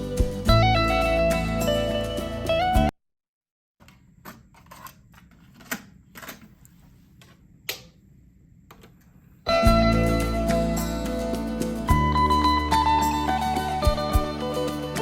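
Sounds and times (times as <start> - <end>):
music playback: 0.0 - 2.9, 9.5 - 15.0.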